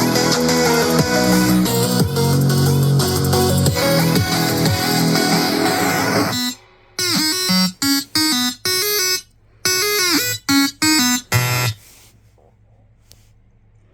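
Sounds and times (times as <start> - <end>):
electronic chime beeping tones: 3.7 - 11.8.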